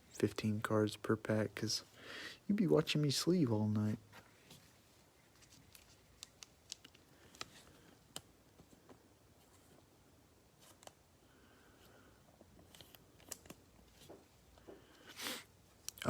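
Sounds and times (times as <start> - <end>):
trading cards clicking and rustling: 5.3 - 8.8, 12.4 - 14.7.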